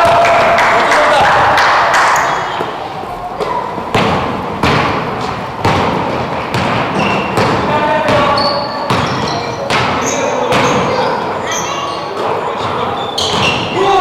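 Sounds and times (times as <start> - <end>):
sneakers squeaking: 0.4 - 14.0
basketball bouncing on court: 3.4 - 11.2, 12.6 - 13.8.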